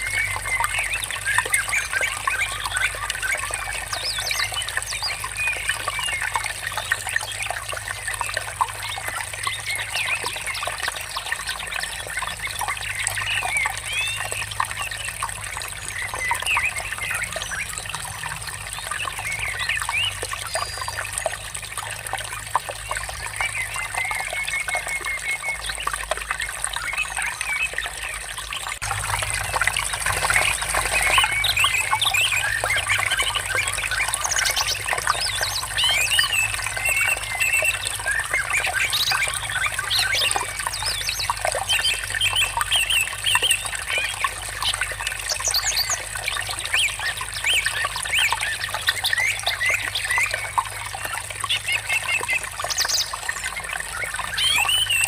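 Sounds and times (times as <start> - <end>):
water trickling: 0.0 - 55.0
small birds chirping: 22.6 - 55.0.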